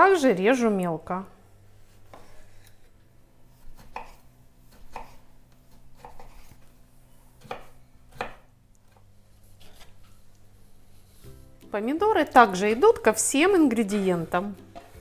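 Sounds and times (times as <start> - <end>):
knife chopping on board: 1.8 - 2.9, 3.5 - 6.7, 7.3 - 10.2, 13.9 - 15.0.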